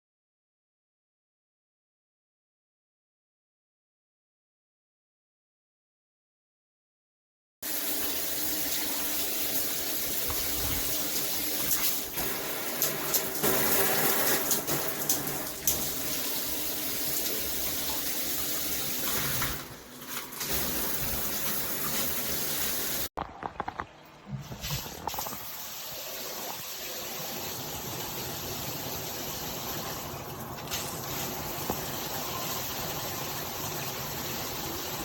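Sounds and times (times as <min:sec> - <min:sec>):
shower head spraying water: 0:07.6 - 0:23.1.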